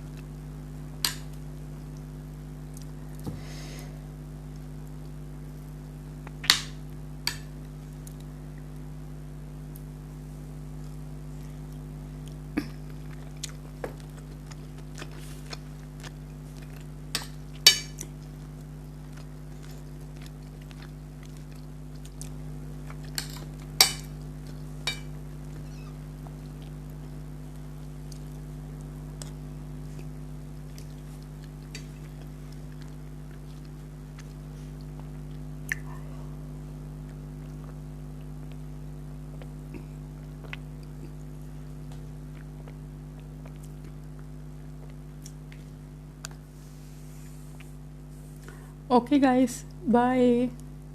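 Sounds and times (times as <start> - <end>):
steady low hum: 0.0 - 50.9
person chewing food: 10.7 - 36.4, 37.0 - 46.6.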